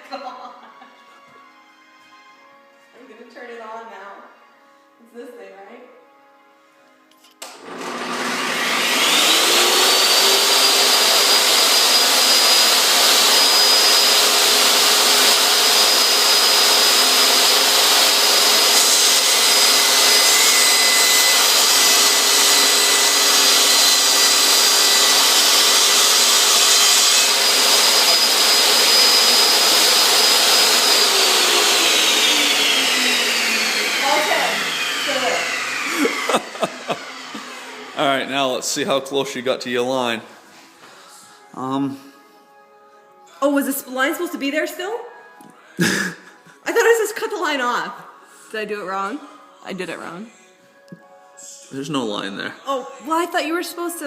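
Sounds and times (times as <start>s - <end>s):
saw blade cutting wood: 7.4s - 38.0s
table saw blade whine: 7.4s - 38.3s.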